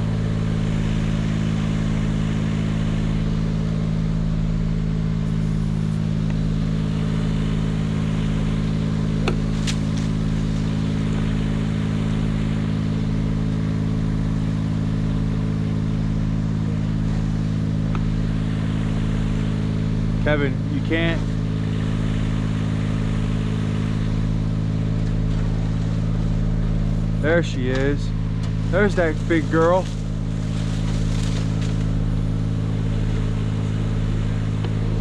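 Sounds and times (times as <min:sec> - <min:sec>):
vehicle engine running steadily: 0:00.0 - 0:35.0.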